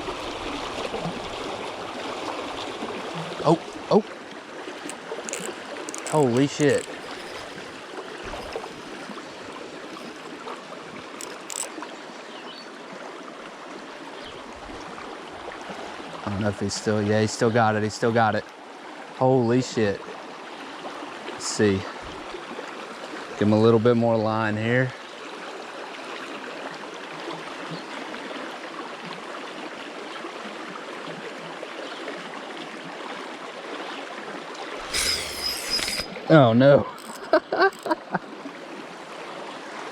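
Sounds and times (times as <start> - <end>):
creek water running: 0.0 - 23.6.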